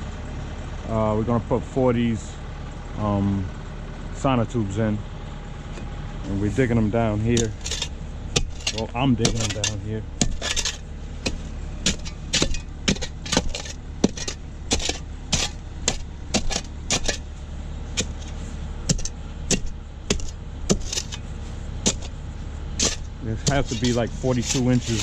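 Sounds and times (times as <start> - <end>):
digging machine engine running: 2.4 - 25.0
metallic clanks and rattles: 7.1 - 25.0.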